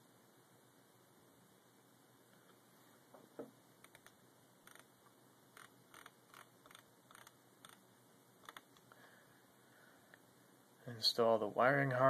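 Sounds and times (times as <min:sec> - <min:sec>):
small parts clicking and rattling: 0:05.6 - 0:07.8.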